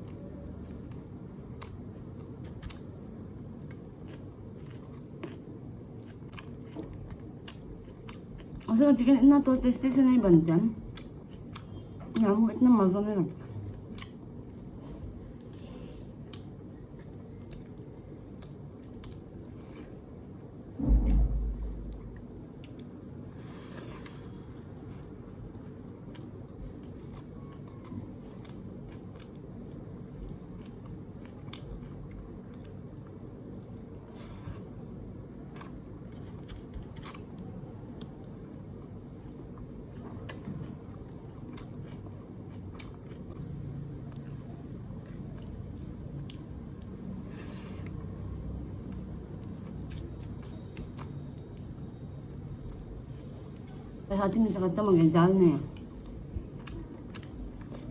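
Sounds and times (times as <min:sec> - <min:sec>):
chewing with wet clicks: 0:00.0 - 0:08.7, 0:10.9 - 0:12.4, 0:13.7 - 0:20.0, 0:22.2 - 0:23.0, 0:25.6 - 0:34.0, 0:35.5 - 0:47.0, 0:48.8 - 0:53.7, 0:55.7 - 0:57.9
low hum: 0:20.6 - 0:23.2
loud low thump: 0:20.8 - 0:22.2.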